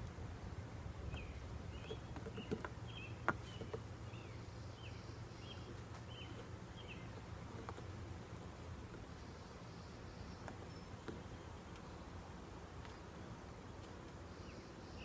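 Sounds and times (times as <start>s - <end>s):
steady low hum: 0.0s - 15.0s
small bird chirping: 1.0s - 8.2s, 8.8s - 12.1s.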